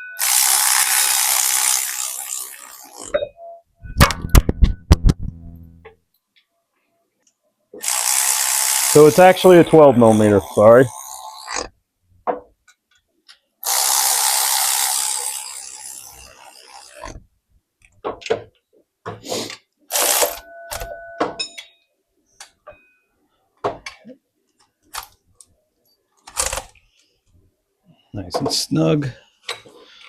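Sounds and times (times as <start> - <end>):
tool clicks and clanks: 0.0 - 5.2, 7.8 - 11.7, 19.3 - 21.8, 26.2 - 26.8
ratchet wrench: 0.2 - 3.2, 7.8 - 11.7, 13.6 - 17.2, 19.9 - 20.4.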